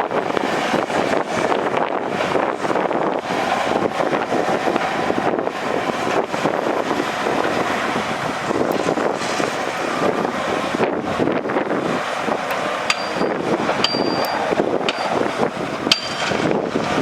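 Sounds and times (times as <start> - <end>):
heavy machinery running: 0.2 - 17.0.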